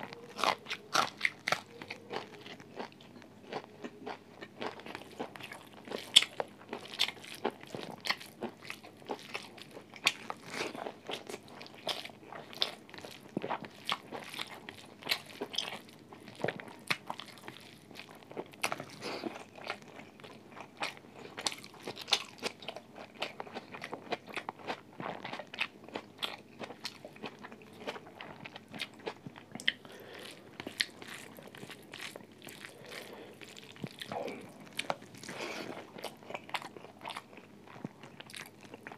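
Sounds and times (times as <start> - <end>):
person crunching and chewing: 0.0 - 38.9.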